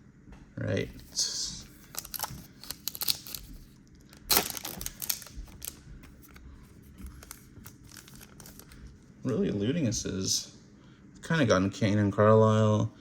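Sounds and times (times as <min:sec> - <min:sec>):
card pack wrapper crinkling: 0:00.9 - 0:08.9
cards rustling and clicking: 0:00.9 - 0:09.0.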